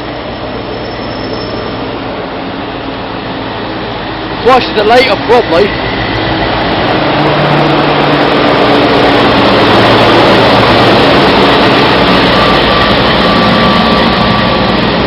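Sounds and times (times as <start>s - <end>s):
locomotive engine hum: 0.0s - 15.0s
train rushing past: 0.0s - 15.0s.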